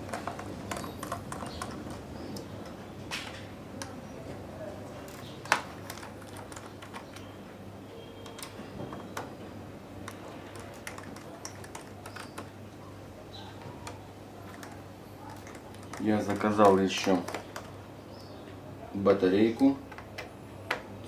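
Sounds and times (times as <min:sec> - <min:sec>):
clicks and taps handling laptop: 0:19.9 - 0:20.9.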